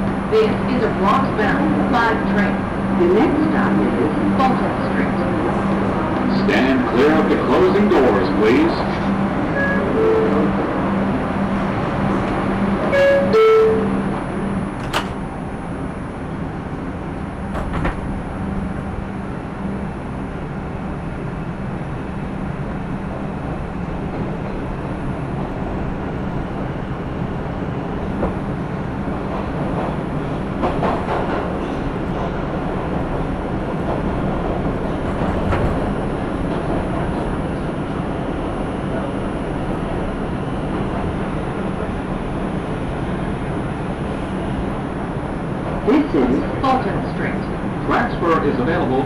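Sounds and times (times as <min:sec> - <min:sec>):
subway train rumble: 0:00.0 - 0:49.0
two-note door chime: 0:09.6 - 0:10.5, 0:12.9 - 0:14.1
rail clicks: 0:14.8 - 0:15.3, 0:29.2 - 0:32.8, 0:33.8 - 0:37.2.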